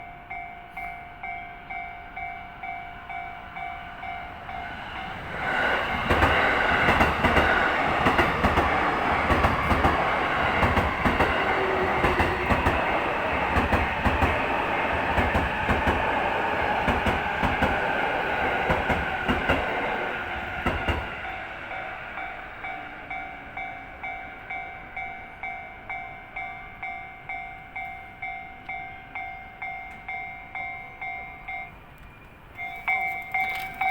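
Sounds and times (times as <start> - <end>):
train wheels clattering over rail joints: 5.1 - 21.1
level crossing alarm bell ringing: 32.6 - 33.9.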